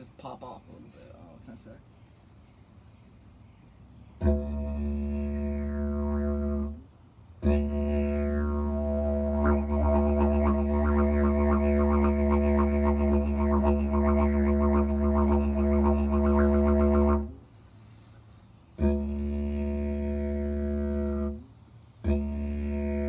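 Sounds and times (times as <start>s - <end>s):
didgeridoo drone: 4.2s - 6.8s, 7.4s - 17.4s, 18.8s - 23.0s.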